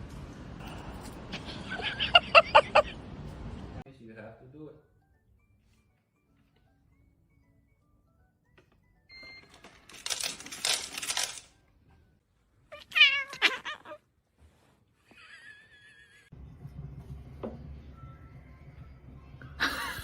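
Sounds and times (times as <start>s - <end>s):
cat meowing: 12.7s - 14.1s.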